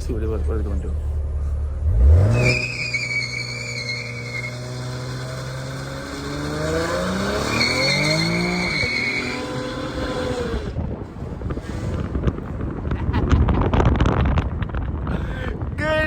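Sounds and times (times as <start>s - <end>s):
car engine revving: 0.0s - 12.9s
tires squealing on pavement: 1.9s - 10.8s.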